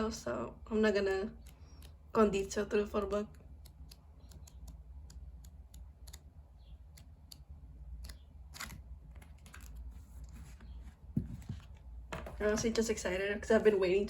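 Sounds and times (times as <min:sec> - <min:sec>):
low steady hum: 0:00.0 - 0:14.0
photo book pages flipping: 0:08.0 - 0:11.9.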